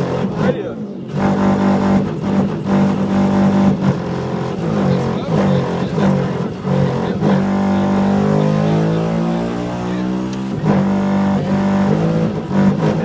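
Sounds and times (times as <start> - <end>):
subwoofers playing bass tones: 0.0 - 13.0.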